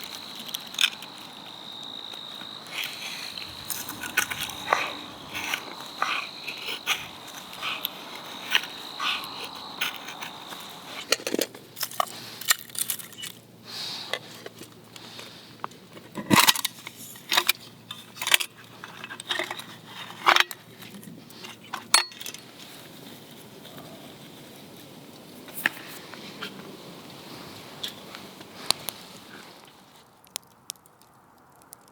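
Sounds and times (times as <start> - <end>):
twigs clicking and crunching: 0.0 - 13.4, 27.8 - 31.9
high insect trill: 0.0 - 13.6.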